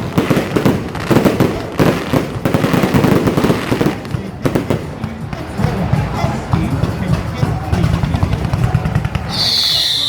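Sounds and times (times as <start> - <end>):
fireworks bangs and crackles: 0.0 - 10.0.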